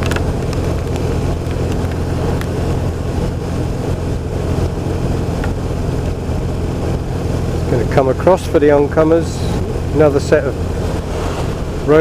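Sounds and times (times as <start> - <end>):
motorcycle engine running: 0.0 - 11.8
wind and road noise: 0.0 - 12.0.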